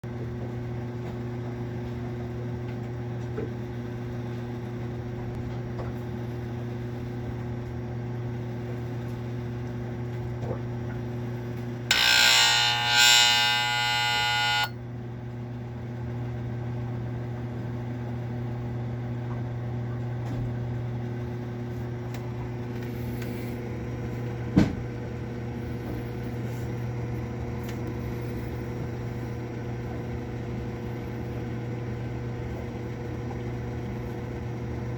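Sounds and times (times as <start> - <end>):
air conditioner humming: 0.1 - 34.9
compressor harsh buzz: 11.9 - 14.8.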